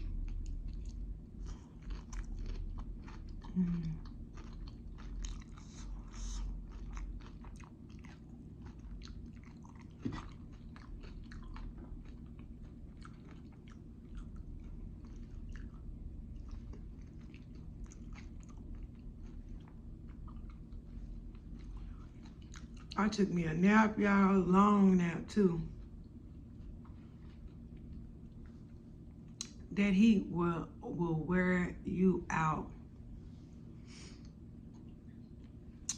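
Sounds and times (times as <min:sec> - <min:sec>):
chewing with mouth clicks: 0:00.0 - 0:23.0, 0:25.7 - 0:29.7, 0:34.2 - 0:35.9.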